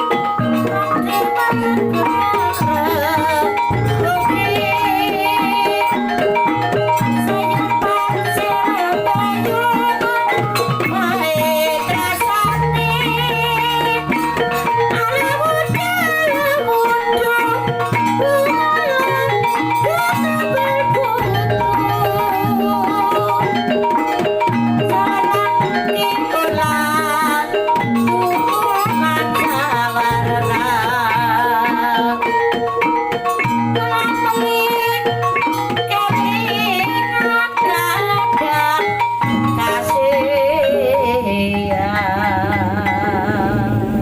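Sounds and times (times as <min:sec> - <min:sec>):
gongs and metallophones: 0:00.0 - 0:44.0
wavering vibrato melody: 0:00.0 - 0:44.0.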